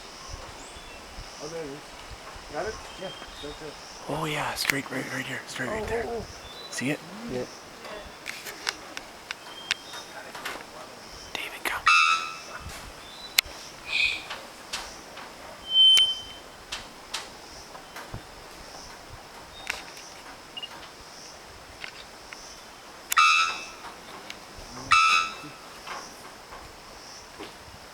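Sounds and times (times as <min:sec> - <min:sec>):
bird ringing calls: 0:15.6 - 0:16.5.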